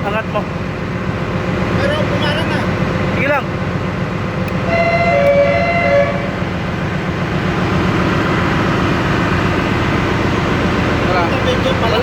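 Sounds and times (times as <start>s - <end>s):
air compressor machinery noise: 0.0s - 12.0s
steady horn-like tone: 4.6s - 6.5s.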